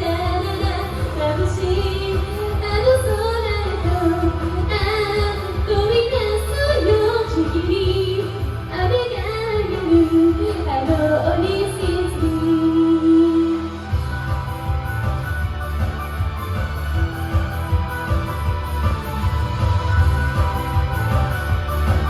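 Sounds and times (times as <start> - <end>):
woman singing: 0.0 - 14.0
karaoke backing track: 0.0 - 22.0.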